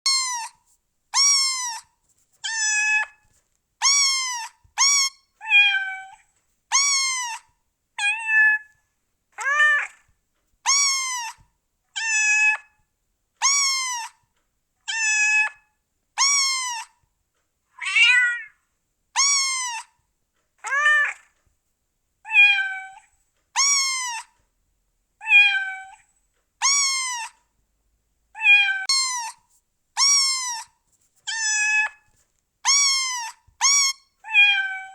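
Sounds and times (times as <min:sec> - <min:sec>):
cats meowing: 0:00.1 - 0:00.6, 0:01.2 - 0:08.7, 0:09.4 - 0:10.1, 0:10.7 - 0:12.8, 0:13.4 - 0:14.2, 0:14.9 - 0:15.6, 0:16.2 - 0:17.0, 0:17.8 - 0:18.6, 0:19.2 - 0:20.0, 0:20.6 - 0:21.4, 0:22.3 - 0:24.4, 0:25.2 - 0:27.5, 0:28.4 - 0:29.4, 0:30.0 - 0:34.9.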